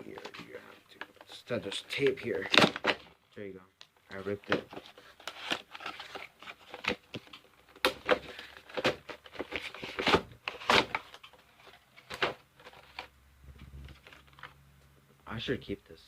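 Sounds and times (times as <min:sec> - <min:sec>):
packaging crinkling and ripping: 0:00.0 - 0:03.2, 0:04.1 - 0:13.1.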